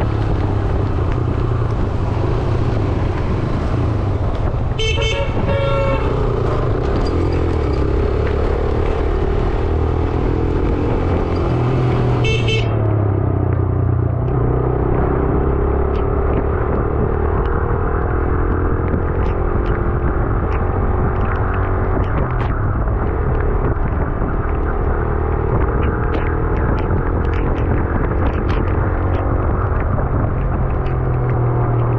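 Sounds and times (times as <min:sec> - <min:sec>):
motorcycle engine running: 0:00.0 - 0:31.9
wind and road noise: 0:00.0 - 0:31.9
vehicle horn: 0:04.8 - 0:06.5, 0:12.1 - 0:13.0.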